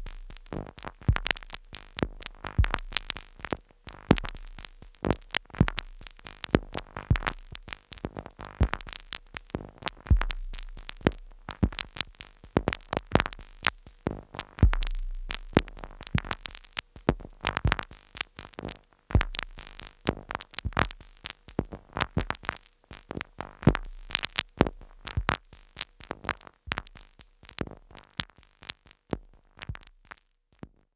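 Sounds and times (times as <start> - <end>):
deep booming synth hits: 10.1 - 10.8, 14.6 - 15.4.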